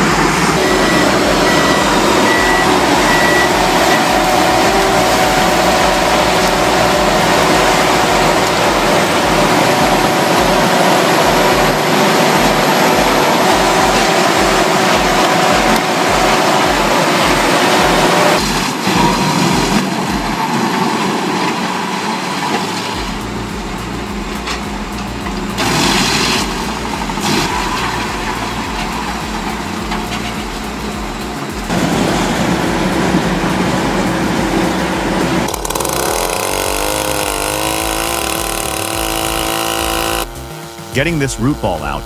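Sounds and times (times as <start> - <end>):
low regular pulse: 0.0 - 20.5, 23.0 - 42.0
wood chippers shredding wood: 31.4 - 42.0.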